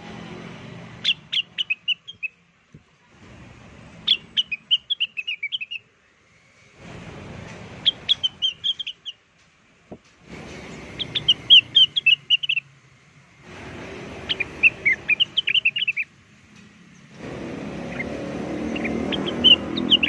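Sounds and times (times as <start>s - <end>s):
rapid high bird chirping: 1.0s - 2.4s, 4.0s - 6.4s, 7.8s - 9.2s, 10.6s - 12.7s, 14.2s - 16.2s, 16.9s - 20.0s.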